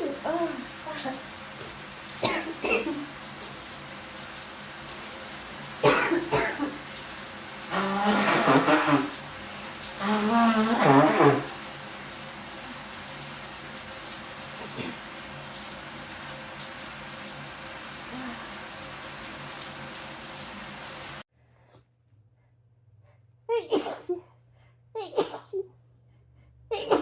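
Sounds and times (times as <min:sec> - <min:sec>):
woman blowing her nose: 0:07.7 - 0:11.7.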